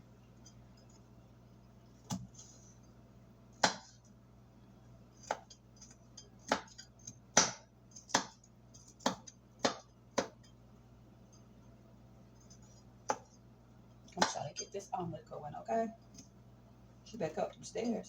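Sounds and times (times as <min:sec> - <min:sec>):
knife chopping on cutting board: 0:03.6 - 0:04.0, 0:05.2 - 0:05.6, 0:06.4 - 0:10.4, 0:13.0 - 0:13.3.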